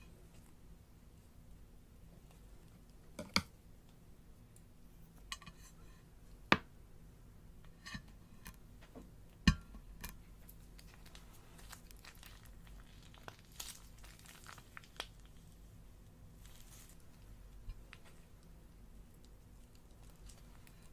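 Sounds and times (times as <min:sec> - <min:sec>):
faint crinkling: 0:10.4 - 0:20.9.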